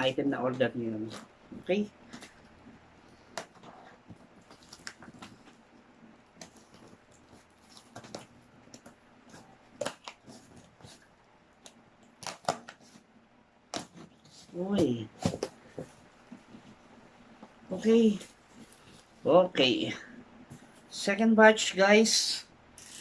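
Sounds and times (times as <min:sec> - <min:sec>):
packaging rustling and clicking: 0:03.3 - 0:05.6.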